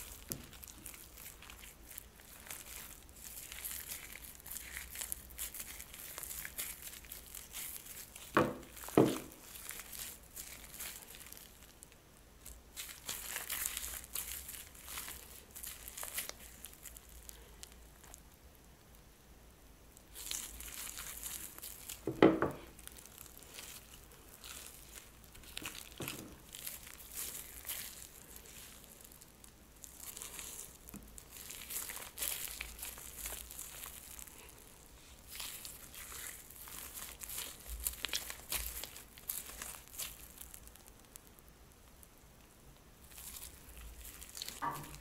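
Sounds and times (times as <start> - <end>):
plastic piping bag crinkling: 0.0 - 18.5, 19.9 - 45.0.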